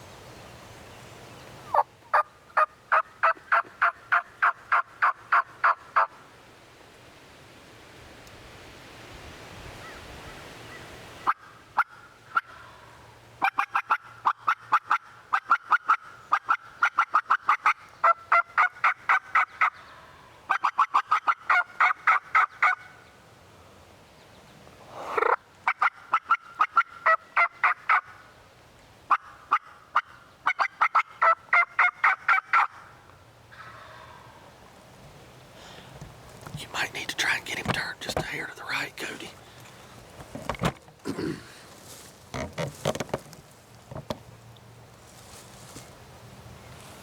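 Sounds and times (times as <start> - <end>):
wild turkey yelping: 1.7 - 6.2, 11.2 - 12.8, 13.4 - 23.0, 25.0 - 28.2, 29.1 - 34.4.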